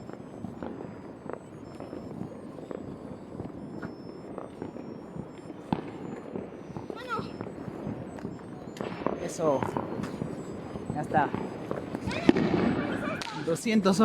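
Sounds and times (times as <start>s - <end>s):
fireworks crackling and banging: 0.0s - 14.0s
sharp firework crack: 5.5s - 13.5s.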